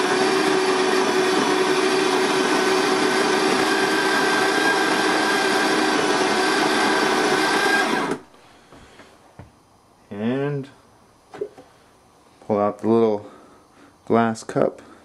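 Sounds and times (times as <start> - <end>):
coffee grinder motor whine: 0.0 - 8.3.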